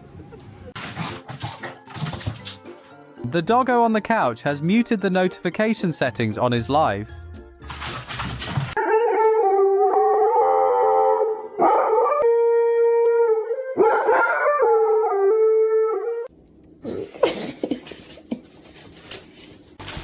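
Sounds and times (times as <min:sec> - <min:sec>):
dog howling: 0:08.8 - 0:16.3.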